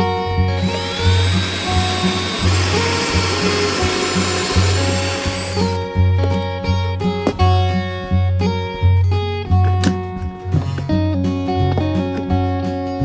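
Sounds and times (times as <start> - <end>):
power tool spinning: 0.6 - 5.8.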